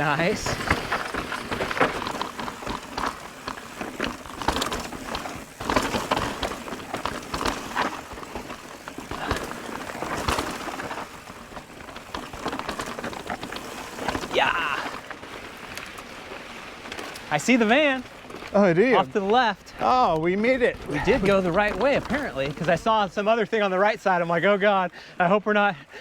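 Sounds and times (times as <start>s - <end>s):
bike knocks and rattles: 0.0s - 15.7s, 19.3s - 23.0s
bike tyres crunching on trail: 0.0s - 26.0s.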